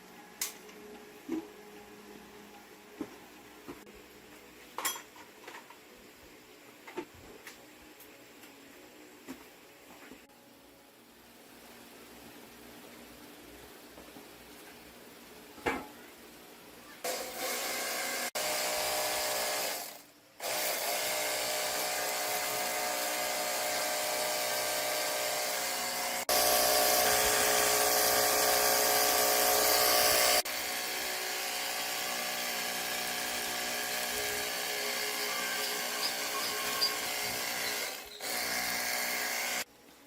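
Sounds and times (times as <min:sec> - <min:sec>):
power tool whining hum: 0:17.1 - 0:39.7.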